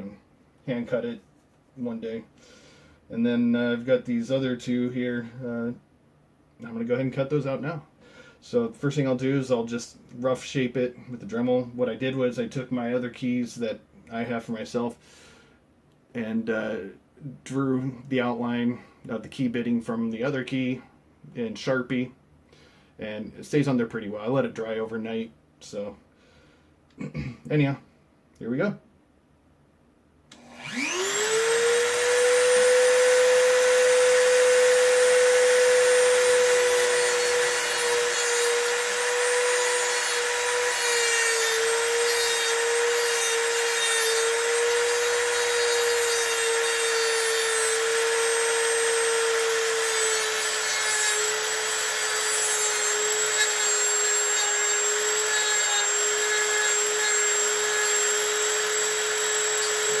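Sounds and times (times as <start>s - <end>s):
rotary tool grinding metal: 30.4s - 60.0s.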